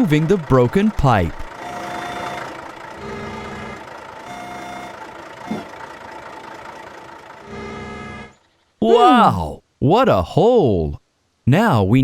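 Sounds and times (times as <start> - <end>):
cartoon engine running: 0.0 - 8.4
back-up beeper: 1.6 - 5.7.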